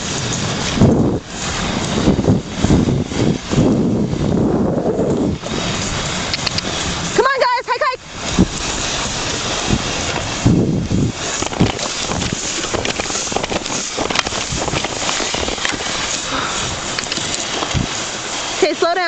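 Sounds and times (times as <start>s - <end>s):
dog-pulled rig rumbling on trail: 0.0s - 19.0s
wind buffeting microphone: 0.0s - 19.0s
knocks and rattles: 11.2s - 16.3s.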